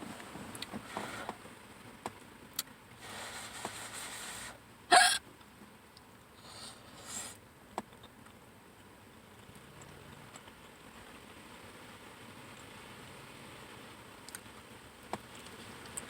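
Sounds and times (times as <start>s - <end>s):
soft hiss: 0.0s - 16.0s
sharp loud hiccup: 4.9s - 5.2s.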